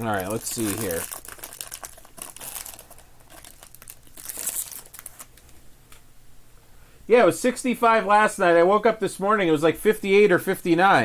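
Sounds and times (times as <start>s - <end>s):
cards rustling: 0.0s - 5.6s
plastic wrapper crinkling: 0.0s - 5.6s.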